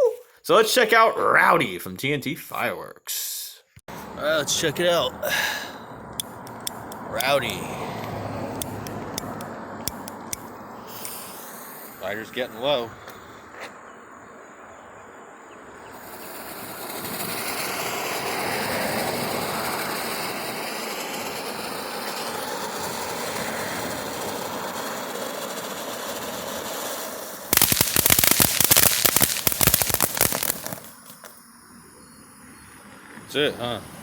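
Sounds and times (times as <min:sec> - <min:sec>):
firework rapid crackling: 0:04.4 - 0:12.2, 0:16.0 - 0:31.4
fountain firework hissing sparks: 0:04.4 - 0:12.4, 0:15.8 - 0:31.4.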